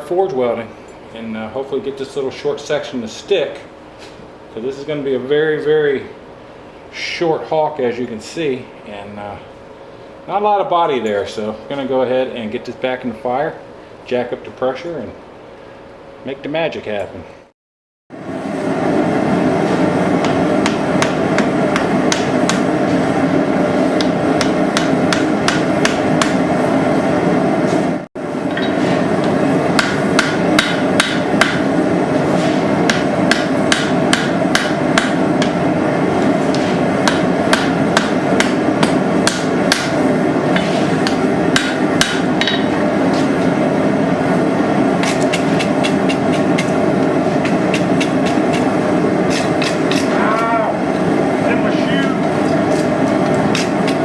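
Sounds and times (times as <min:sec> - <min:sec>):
gas forge burner roar: 0:18.1 - 0:54.0
hammer blows on hot steel: 0:32.5 - 0:35.7.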